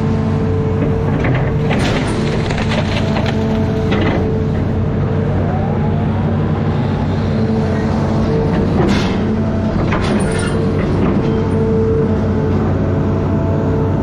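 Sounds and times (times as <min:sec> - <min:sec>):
excavator engine running under load: 0:00.0 - 0:14.0.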